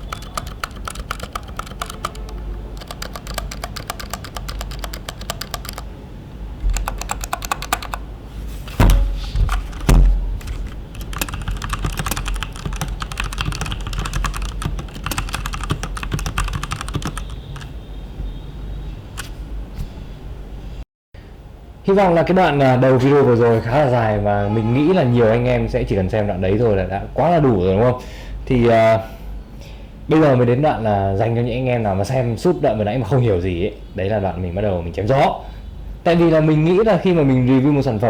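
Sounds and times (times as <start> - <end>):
mechanical keyboard key clicks: 0.0 - 5.9, 6.6 - 8.0, 10.5 - 17.7
heavy thumps: 8.6 - 11.4.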